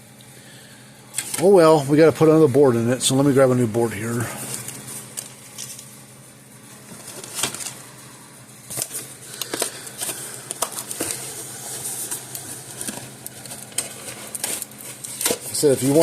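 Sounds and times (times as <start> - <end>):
rustling: 8.7 - 16.0.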